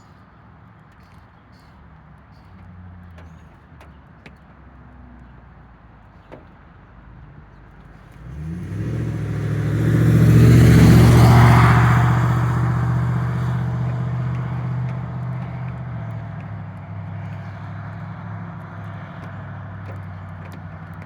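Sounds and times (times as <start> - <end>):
tyre noise: 7.9 - 21.0
vehicle engine passing: 8.1 - 21.0.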